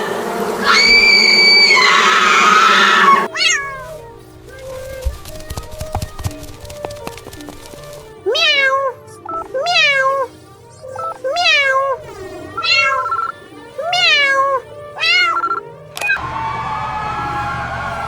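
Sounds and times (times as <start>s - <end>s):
cat meowing: 2.7s - 4.0s, 8.3s - 9.0s, 9.6s - 10.3s, 11.0s - 12.0s, 12.6s - 16.2s.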